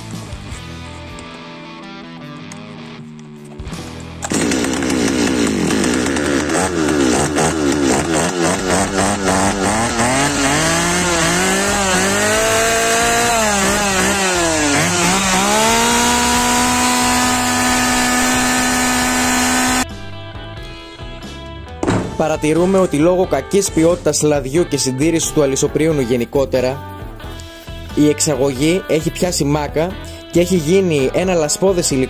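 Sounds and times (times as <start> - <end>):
chainsaw engine revving and idling: 3.1 - 20.0.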